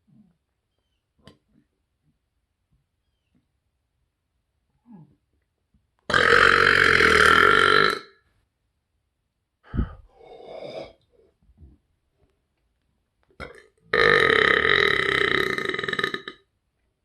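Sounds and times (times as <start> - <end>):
man burping: 6.1 - 8.1, 9.7 - 11.0, 13.4 - 16.4
breathy sounds: 9.6 - 11.4.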